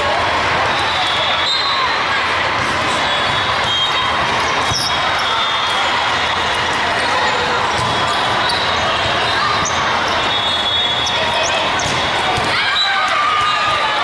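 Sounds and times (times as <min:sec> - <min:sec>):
many overlapping voices: 0:00.0 - 0:14.0
volleyball hits echoing: 0:02.4 - 0:05.8, 0:07.4 - 0:10.1, 0:10.9 - 0:14.0.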